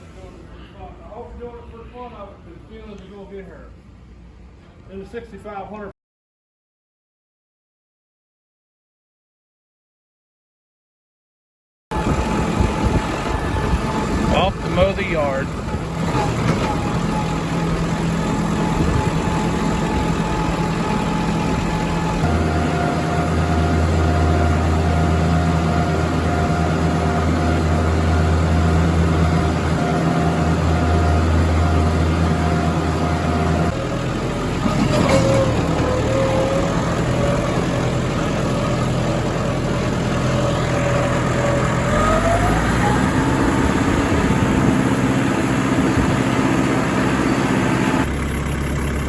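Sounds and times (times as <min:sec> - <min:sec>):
tractor engine running: 0:11.9 - 0:49.0.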